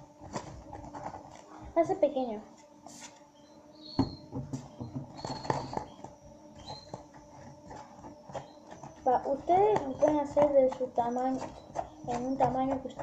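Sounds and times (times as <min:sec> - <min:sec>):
spoon stirring slime: 0:06.6 - 0:13.0.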